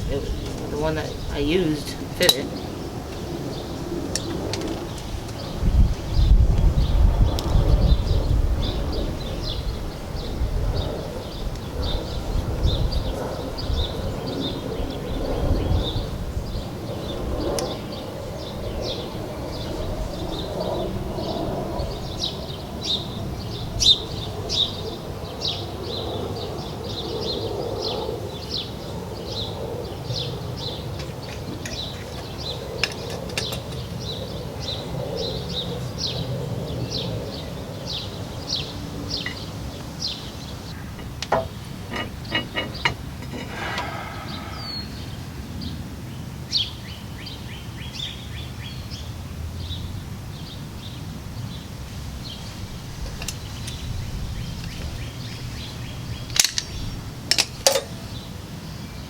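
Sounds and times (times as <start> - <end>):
bird chirping: 0.0 - 45.8
wind rumble on microphone: 0.0 - 59.0
sharp clicks: 56.3 - 58.0.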